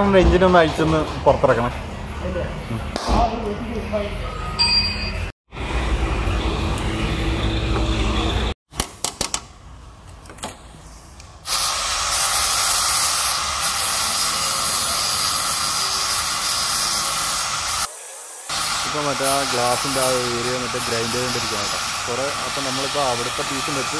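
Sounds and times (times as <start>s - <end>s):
angle grinder grinding metal: 18.5s - 23.9s.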